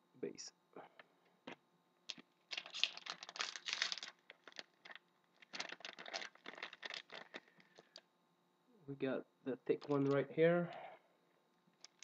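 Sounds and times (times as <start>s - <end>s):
plastic wrapper crinkling and tearing: 2.1s - 8.0s, 9.8s - 10.2s, 11.7s - 12.0s.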